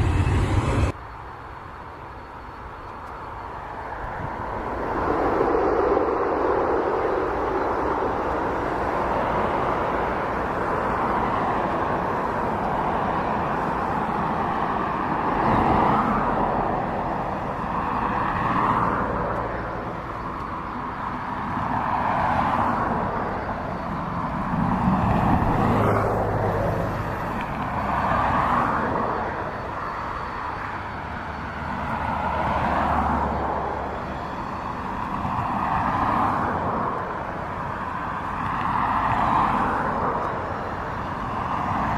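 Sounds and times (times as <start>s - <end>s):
low hum: 0.0s - 1.0s
vehicle rushing past: 0.0s - 1.0s.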